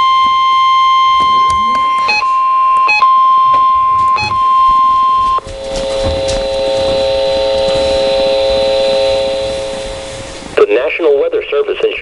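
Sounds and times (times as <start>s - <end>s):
lower multi-pitch alert tone: 1.0s - 10.2s
high-pitched alert tone: 1.2s - 2.4s.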